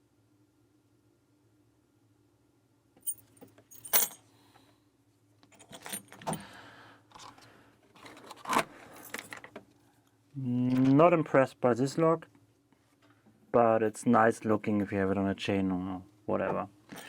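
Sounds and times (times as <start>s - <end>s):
keys jangling and clinking: 3.0s - 4.2s, 5.5s - 6.4s, 8.9s - 9.5s.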